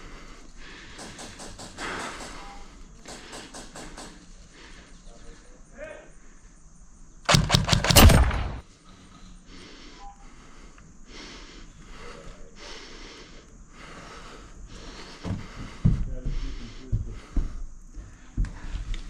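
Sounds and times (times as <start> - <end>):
airsoft rifle rapid shots: 7.3 - 8.6.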